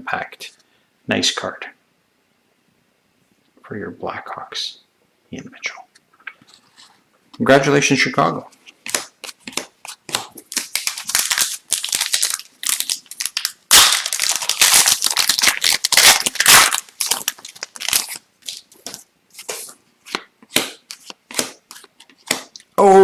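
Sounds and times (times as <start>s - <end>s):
cards clicking and sliding: 8.8s - 11.9s, 17.1s - 22.7s
plastic wrapper crinkling and tearing: 8.9s - 19.1s.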